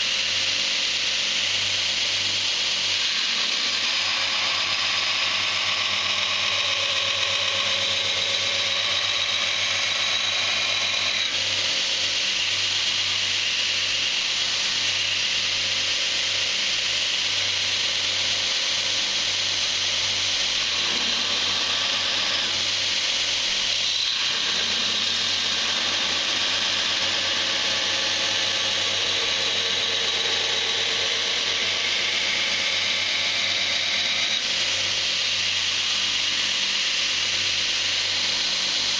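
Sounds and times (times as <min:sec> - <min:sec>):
belt grinder grinding steel: 0:02.8 - 0:12.4, 0:20.1 - 0:36.8.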